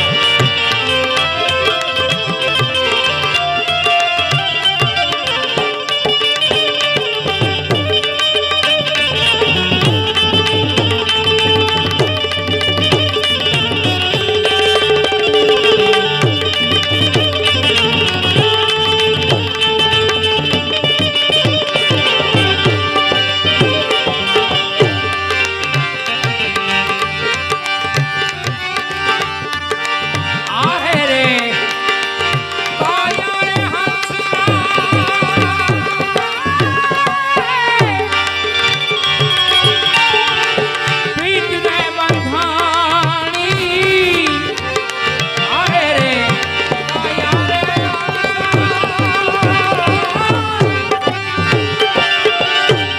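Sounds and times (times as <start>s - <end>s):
wavering sliding melody: 0.0s - 42.3s
tabla rhythm: 0.0s - 52.9s.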